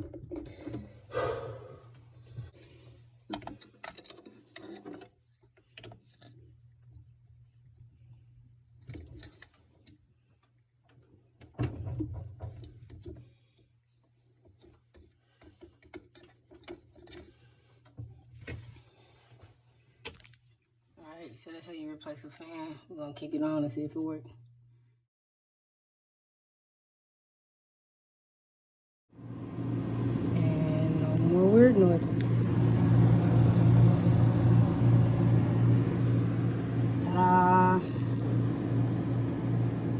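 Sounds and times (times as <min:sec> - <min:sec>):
refrigerator hum: 0:00.0 - 0:20.6, 0:29.2 - 0:39.9
small clicks and knocks of parts: 0:03.3 - 0:06.4, 0:08.8 - 0:11.6, 0:14.4 - 0:18.3
low steady hum: 0:29.2 - 0:39.9.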